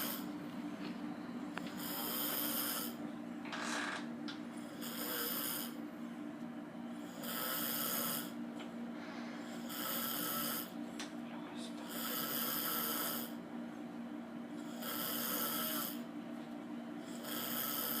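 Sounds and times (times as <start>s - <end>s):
person snoring: 1.8s - 3.0s, 4.7s - 5.8s, 7.0s - 8.4s, 9.3s - 10.7s, 11.8s - 13.4s, 14.6s - 16.0s, 17.0s - 18.0s.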